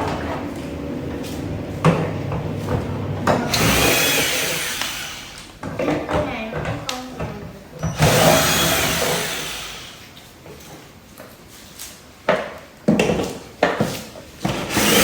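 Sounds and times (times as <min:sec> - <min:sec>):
tool rasping scrape: 0:02.3 - 0:05.5.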